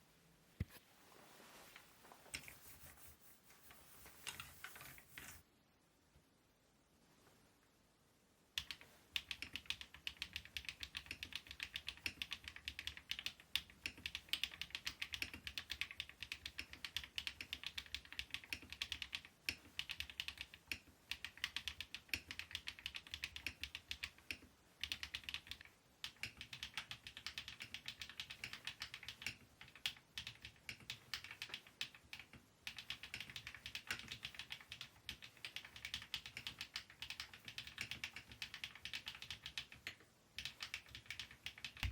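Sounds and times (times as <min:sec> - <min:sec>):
mechanical keyboard typing: 0:08.6 - 0:41.9.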